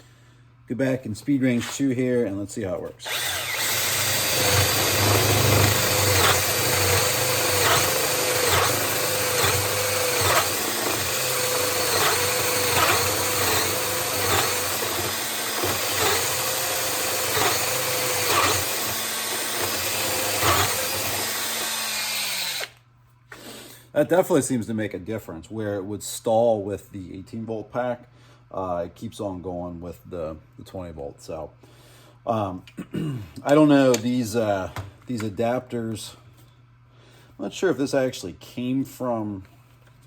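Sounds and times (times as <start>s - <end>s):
cordless drill drilling: 3.0s - 22.8s.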